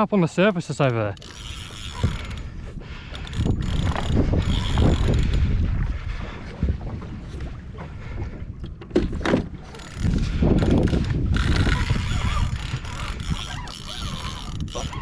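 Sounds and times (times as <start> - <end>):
fishing reel clicking and whirring: 0.7 - 5.6, 9.7 - 15.0
wind buffeting microphone: 1.0 - 15.0.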